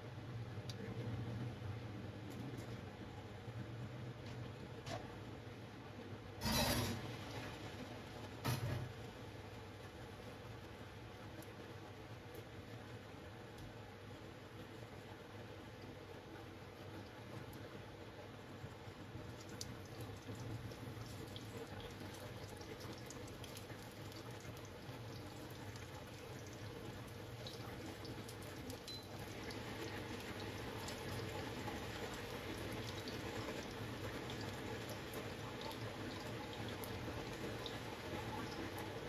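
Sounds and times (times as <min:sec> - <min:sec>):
water drips and splashes: 0:18.6 - 0:39.0.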